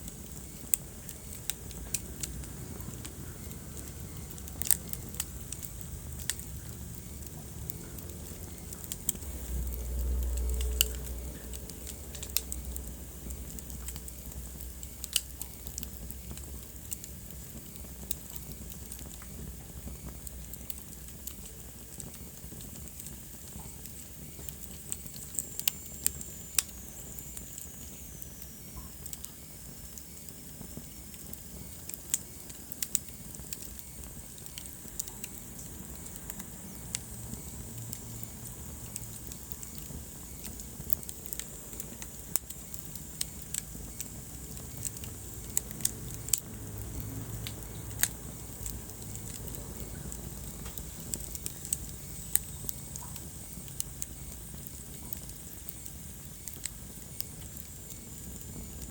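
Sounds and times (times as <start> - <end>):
wood fire crackling: 0.0 - 58.9.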